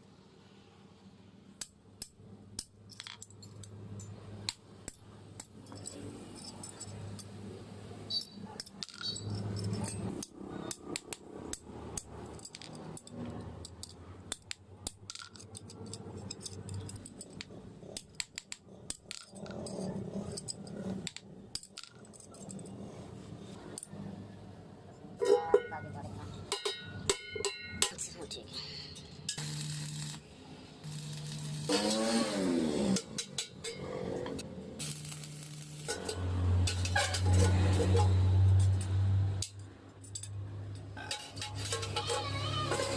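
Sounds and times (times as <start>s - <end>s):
metallic clinking and tapping: 1.6s - 7.4s, 8.1s - 22.8s, 26.4s - 30.1s, 32.9s - 42.9s.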